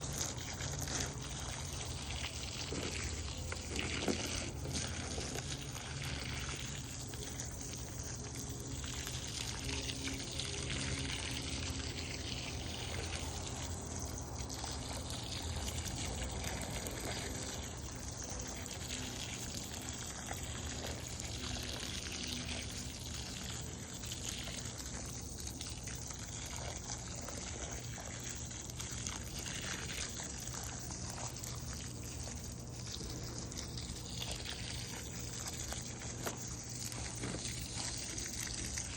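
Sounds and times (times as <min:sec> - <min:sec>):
water splashing onto plants: 0:00.0 - 0:38.9.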